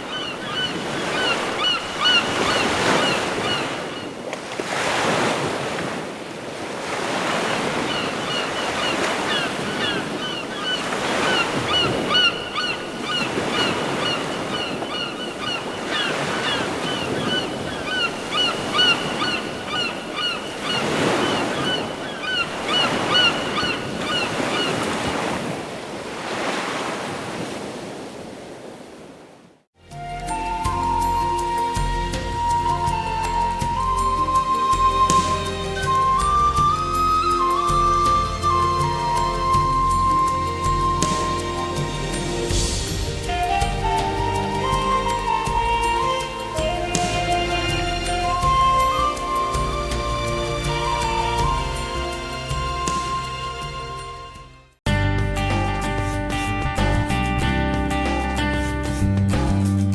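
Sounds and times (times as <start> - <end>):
repeated bird calls: 0.0 - 4.2, 7.8 - 24.9, 30.1 - 42.5
ocean waves washing in: 0.0 - 54.4
melodic ringtone tune: 29.9 - 54.4.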